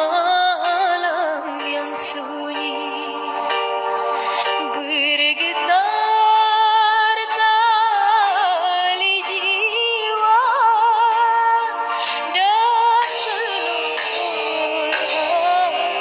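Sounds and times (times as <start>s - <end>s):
woman singing a ballad: 0.0s - 3.6s, 4.4s - 16.0s
music backing with percussion: 0.0s - 4.8s, 10.2s - 16.0s.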